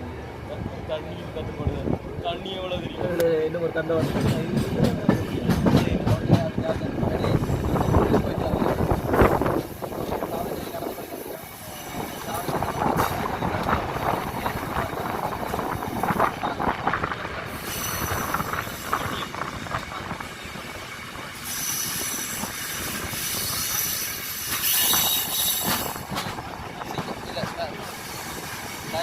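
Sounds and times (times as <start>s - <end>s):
train rumbling on rails: 0.0s - 29.0s
wheels squealing: 15.8s - 26.3s.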